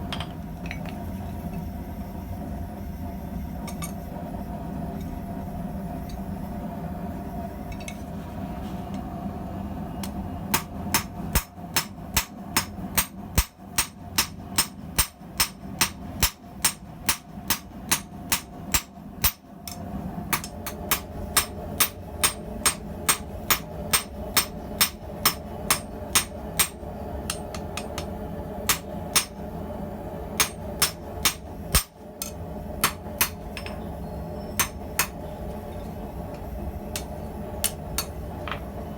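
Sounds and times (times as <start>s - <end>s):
steady hum: 0.0s - 38.9s
hammer striking steel on anvil: 10.0s - 29.4s, 30.4s - 33.8s, 34.6s - 35.2s, 36.4s - 38.6s.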